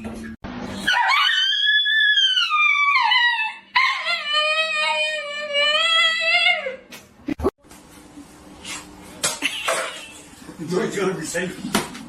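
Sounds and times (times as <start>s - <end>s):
dog howling: 0.8s - 6.9s.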